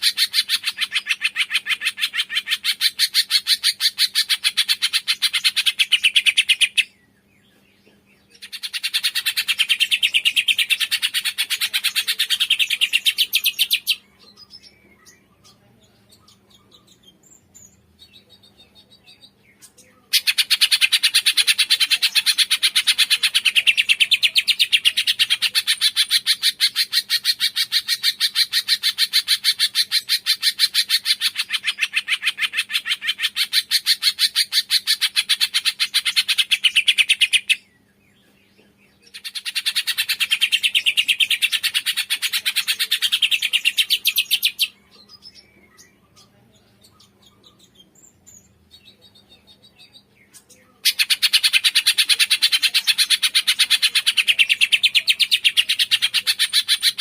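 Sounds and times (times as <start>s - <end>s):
bird chirping: 0.0s - 57.0s.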